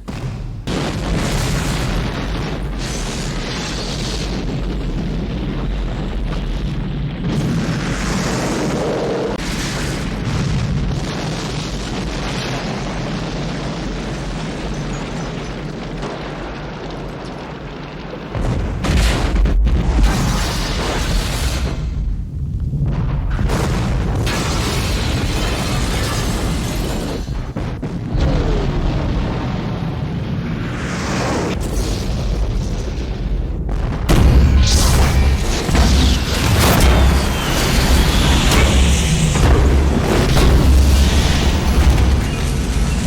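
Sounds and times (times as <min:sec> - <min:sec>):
explosion blast: 0:00.0 - 0:22.2, 0:22.8 - 0:43.0
long dense rumble: 0:33.6 - 0:43.0.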